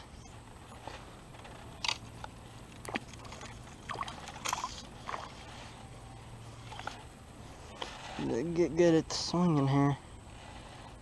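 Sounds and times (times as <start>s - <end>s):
water splashing and dripping: 2.7s - 5.4s.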